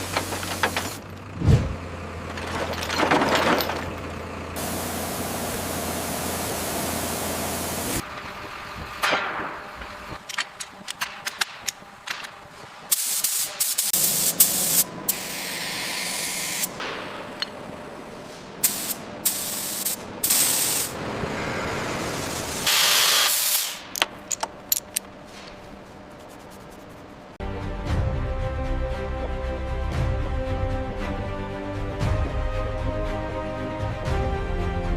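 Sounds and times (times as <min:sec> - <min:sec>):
low engine-like hum: 0:00.0 - 0:10.9, 0:14.0 - 0:22.7
spray hiss: 0:12.9 - 0:16.8, 0:18.6 - 0:20.9, 0:22.4 - 0:23.9.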